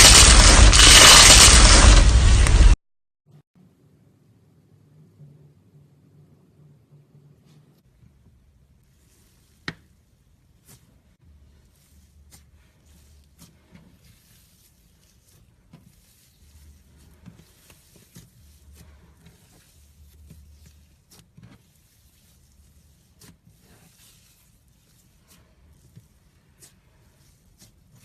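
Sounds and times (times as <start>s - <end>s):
slime being squished by hand: 11.6s - 28.0s.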